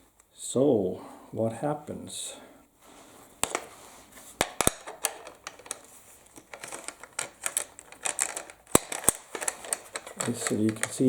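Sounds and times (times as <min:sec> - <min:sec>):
rifle bolt clicking and rattling: 0:04.6 - 0:11.0.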